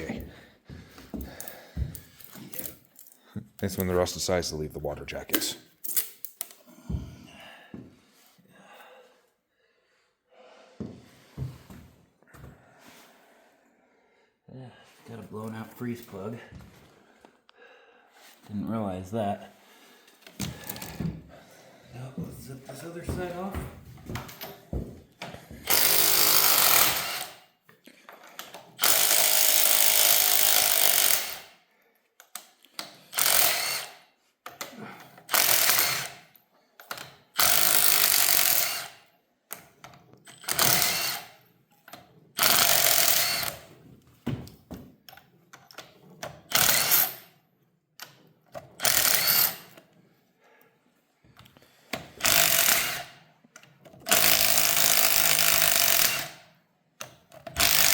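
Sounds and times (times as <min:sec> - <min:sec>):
impact wrench hammering: 0:25.6 - 0:27.4, 0:28.8 - 0:31.5, 0:35.3 - 0:36.2, 0:40.4 - 0:41.3, 0:52.2 - 0:53.1, 0:54.1 - 0:56.4, 0:57.6 - 0:57.9.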